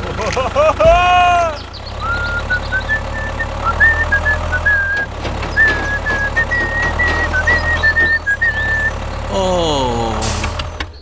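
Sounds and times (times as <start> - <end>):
small motor humming: 0.0 - 11.0
high wavering whistle tune: 2.0 - 5.0.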